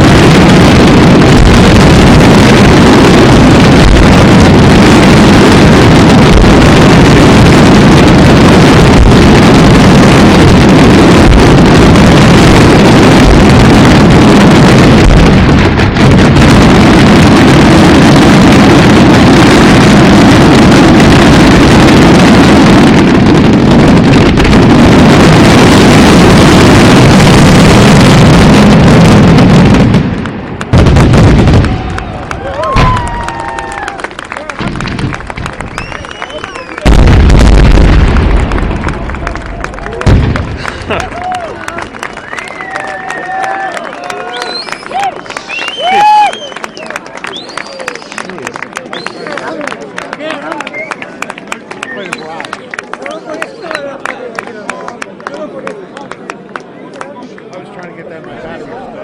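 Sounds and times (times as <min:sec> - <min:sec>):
fireworks deep rumble: 0:00.0 - 0:59.0.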